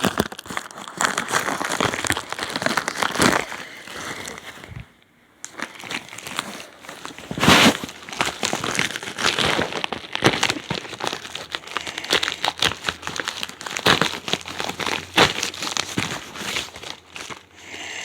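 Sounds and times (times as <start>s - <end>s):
packaging crinkling and rustling: 0.0s - 17.7s.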